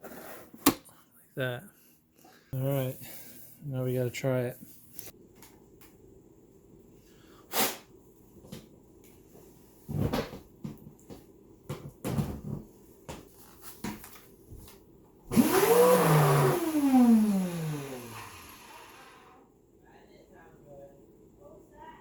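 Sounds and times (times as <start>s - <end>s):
vacuum motor whining: 15.3s - 19.4s.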